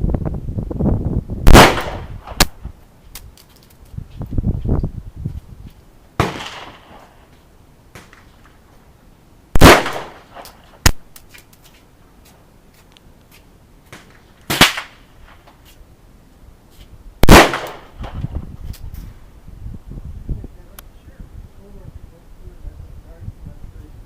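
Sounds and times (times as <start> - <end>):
gunshots echoing: 1.5 - 2.6, 6.2 - 7.1, 9.6 - 11.0, 14.5 - 15.4, 17.2 - 18.2.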